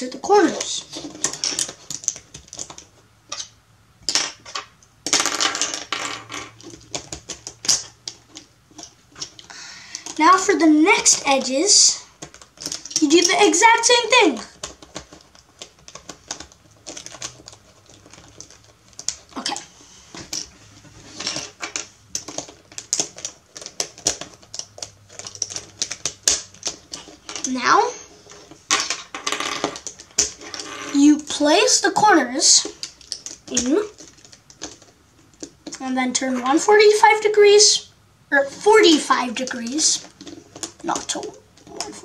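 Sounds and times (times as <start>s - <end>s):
plastic puzzle cube pieces clicking: 0.5s - 3.5s, 4.1s - 10.2s, 12.2s - 20.5s, 21.2s - 27.6s, 28.2s - 31.4s, 32.5s - 35.8s, 39.3s - 42.0s.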